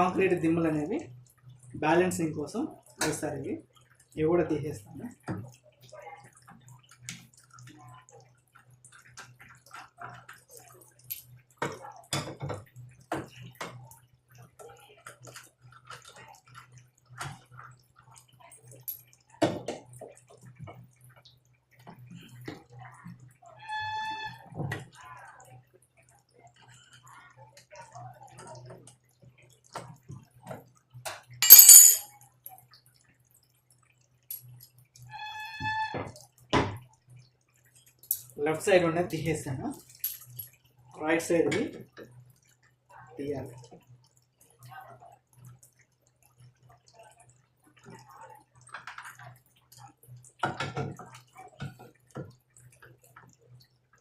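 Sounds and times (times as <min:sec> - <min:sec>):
hand tools clicking and knocking: 0:31.4 - 0:32.0
loud ringing clatter: 0:31.4 - 0:32.0.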